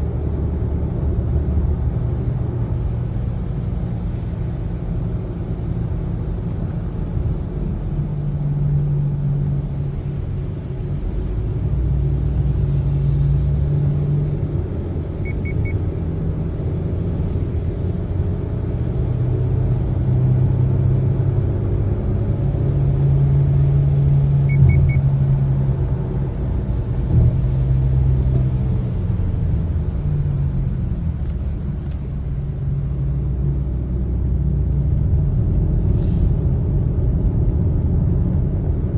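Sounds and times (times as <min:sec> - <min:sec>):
car road noise: 0:00.0 - 0:38.9
quick triple beep: 0:15.2 - 0:15.8, 0:24.4 - 0:25.1.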